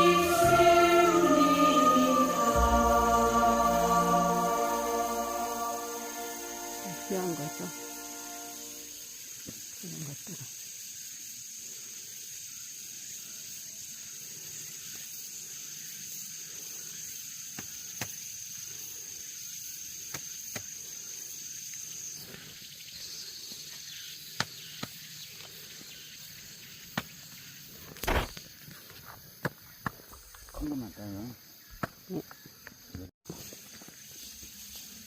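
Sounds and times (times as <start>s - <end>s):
faint hiss: 0.0s - 23.4s
insects trilling: 0.0s - 35.0s.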